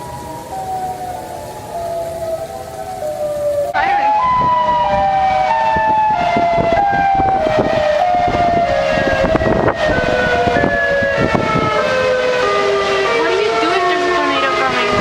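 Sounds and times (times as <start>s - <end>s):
tornado warning sirens: 0.0s - 15.0s
gusty low noise: 4.1s - 11.8s.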